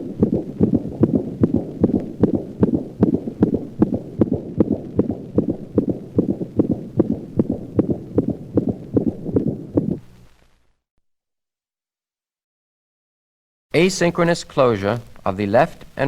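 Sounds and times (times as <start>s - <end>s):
dog heartbeat: 0.0s - 10.0s
high-pitched heart murmur: 0.0s - 10.1s.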